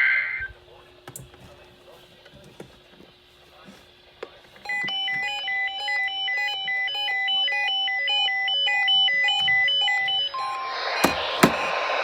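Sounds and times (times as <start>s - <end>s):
electronic beeping ringtone melody: 4.7s - 11.7s.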